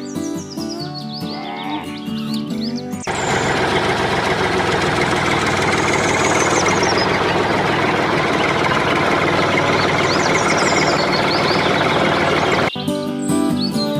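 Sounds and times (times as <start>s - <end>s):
music: 0.0s - 3.1s, 12.7s - 13.9s
birds chirping: 0.0s - 13.9s
small motor running: 3.0s - 12.7s.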